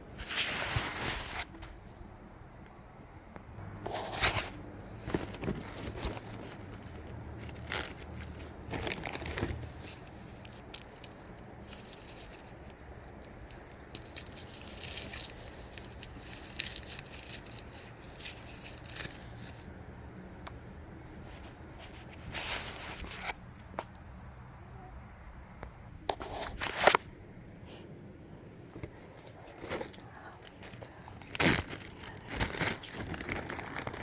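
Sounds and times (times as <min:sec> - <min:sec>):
packaging crinkling and rustling: 0:03.9 - 0:19.6, 0:28.8 - 0:34.0.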